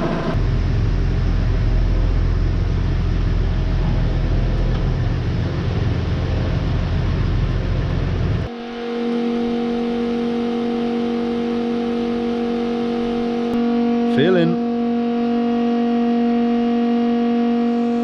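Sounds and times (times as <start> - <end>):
large engine rumbling: 0.0 - 8.5
steady held tones: 0.0 - 18.0.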